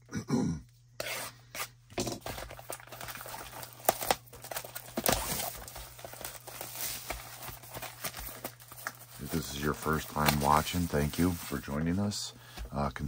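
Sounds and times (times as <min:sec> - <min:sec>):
packaging crinkling and snapping: 0:02.2 - 0:11.8.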